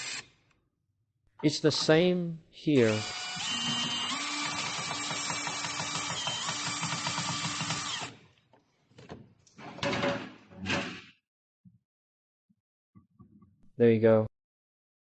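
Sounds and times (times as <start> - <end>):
power driver driving a screw: 0.0 - 0.2, 2.8 - 8.2.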